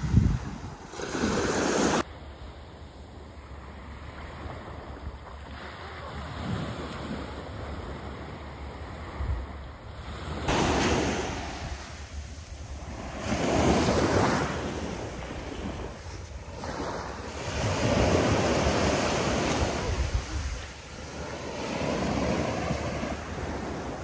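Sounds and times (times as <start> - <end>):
wind buffeting microphone: 0.0 - 2.0, 10.4 - 24.0
ocean surf washing on beach: 0.0 - 2.1, 3.8 - 24.0.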